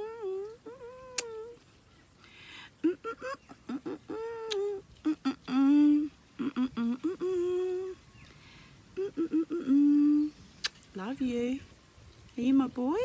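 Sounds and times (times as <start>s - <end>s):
person humming: 0.0s - 1.6s, 2.8s - 8.0s, 9.0s - 10.4s
chirp-like sounds: 0.0s - 4.8s, 7.4s - 13.0s.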